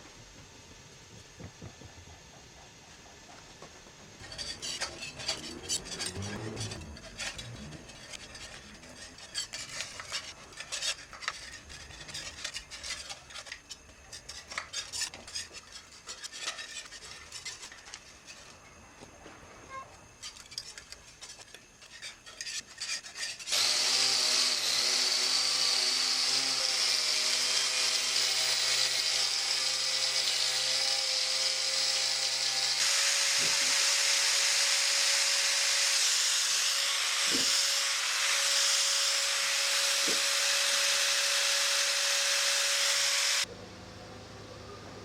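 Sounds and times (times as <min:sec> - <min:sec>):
power tool whining under load: 0:01.4 - 0:13.1, 0:23.4 - 0:43.5.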